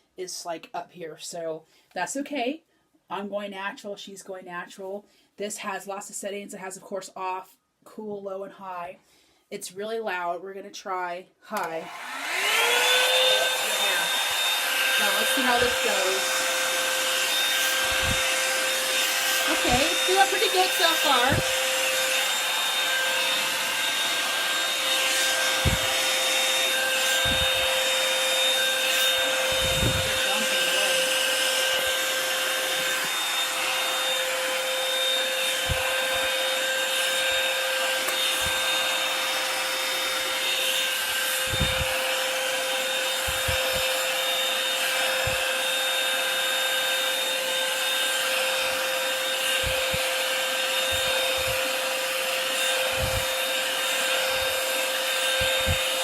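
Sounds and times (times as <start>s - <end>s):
hair dryer brush whirring: 11.6s - 56.0s
brush bumping and rubbing: 13.5s - 40.6s, 49.4s - 50.2s, 50.8s - 51.8s, 52.7s - 54.5s, 55.2s - 56.0s.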